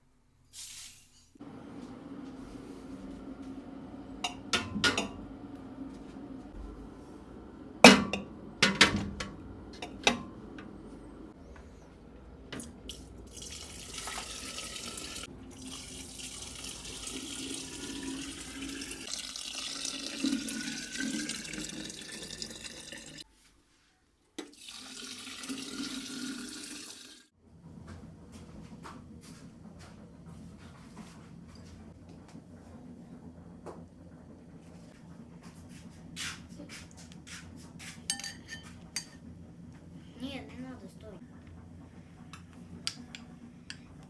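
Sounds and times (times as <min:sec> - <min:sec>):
water running into container: 0:02.2 - 0:11.3, 0:12.2 - 0:23.2, 0:24.4 - 0:27.3
glass clinking: 0:04.2 - 0:05.2, 0:38.1 - 0:39.2.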